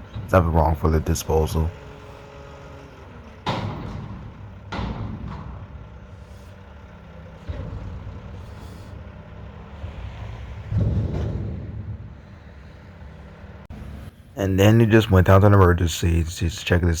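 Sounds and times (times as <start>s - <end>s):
diesel engine running: 0.0s - 17.0s
air brake hisses: 6.0s - 7.4s, 8.2s - 9.7s.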